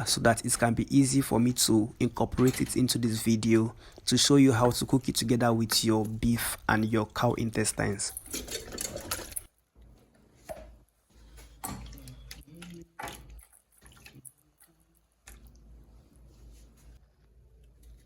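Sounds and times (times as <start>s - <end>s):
water dripping and splashing: 11.4s - 16.0s.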